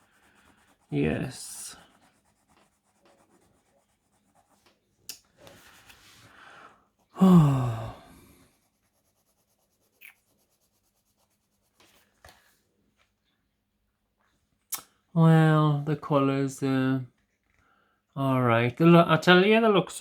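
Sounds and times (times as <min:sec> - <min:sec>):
pencil scratching on paper: 0:00.0 - 0:06.2, 0:08.4 - 0:12.2.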